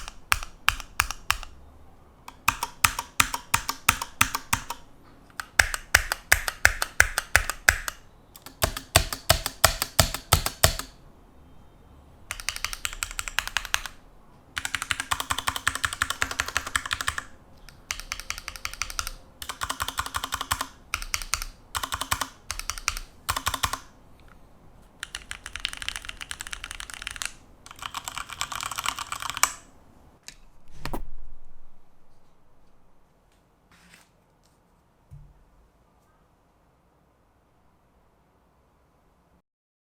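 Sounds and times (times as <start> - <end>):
mechanical keyboard typing: 0.0 - 1.6, 2.3 - 11.0, 12.3 - 14.0, 14.6 - 23.9, 25.0 - 29.7.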